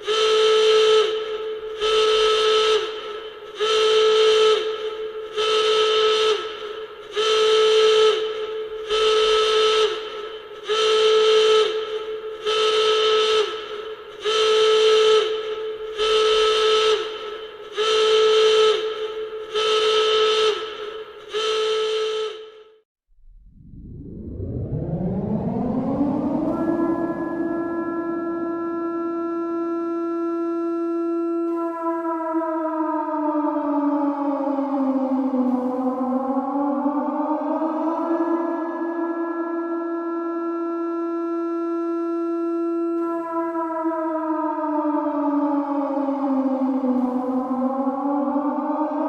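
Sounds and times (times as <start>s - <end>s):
pulsing alarm horn: 0.0s - 22.8s, 23.5s - 49.0s
low swelling sound: 23.1s - 29.2s.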